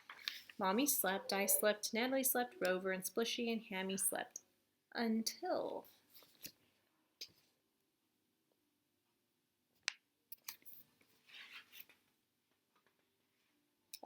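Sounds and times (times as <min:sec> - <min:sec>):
book pages rustling: 0:00.0 - 0:00.6, 0:10.4 - 0:12.1.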